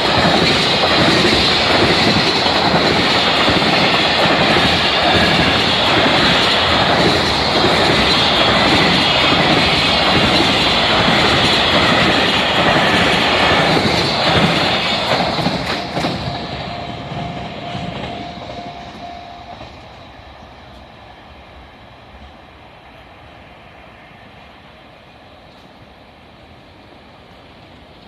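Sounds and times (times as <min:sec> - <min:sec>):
train wheels clattering over rails: 0:00.0 - 0:20.9.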